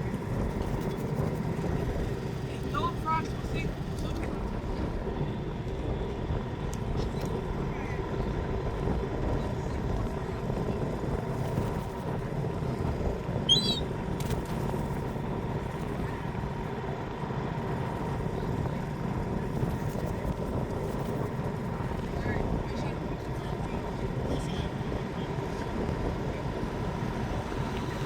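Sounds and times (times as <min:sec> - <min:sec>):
outdoor background rumble: 0:00.0 - 0:28.0
seagull call: 0:13.5 - 0:13.9.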